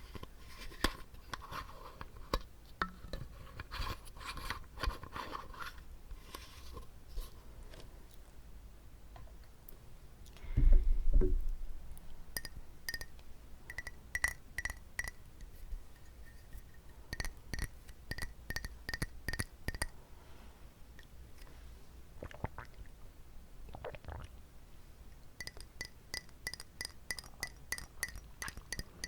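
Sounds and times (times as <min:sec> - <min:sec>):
clinking taps on glass: 0:12.4 - 0:13.1.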